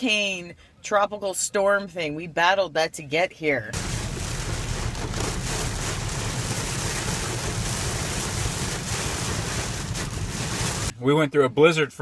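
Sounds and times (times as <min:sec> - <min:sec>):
heavy rain pouring: 0:03.8 - 0:10.9.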